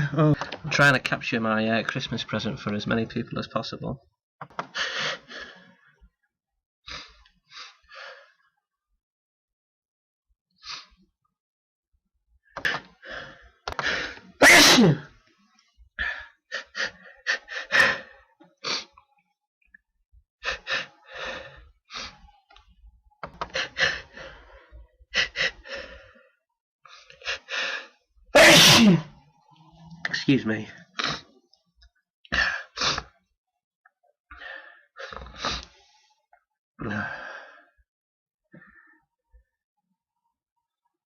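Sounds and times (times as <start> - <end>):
man sneezing: 14.4 - 15.1, 28.4 - 29.2.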